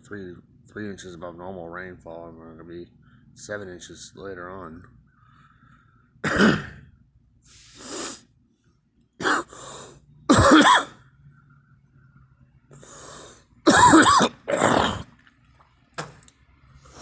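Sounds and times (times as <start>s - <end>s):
quiet breaths: 2.9s - 3.5s, 4.9s - 6.2s
person coughing harshly: 6.2s - 6.8s, 9.2s - 9.6s, 10.3s - 11.0s, 13.7s - 15.1s.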